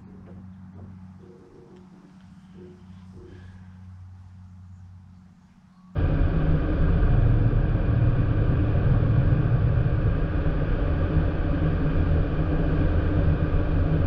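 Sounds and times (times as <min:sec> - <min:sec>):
light aircraft engine drone: 0:00.0 - 0:14.0.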